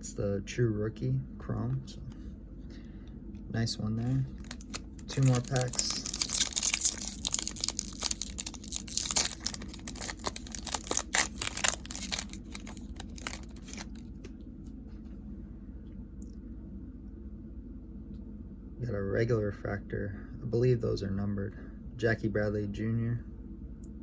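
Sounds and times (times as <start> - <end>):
card pack wrapper crinkling: 4.0 - 14.3.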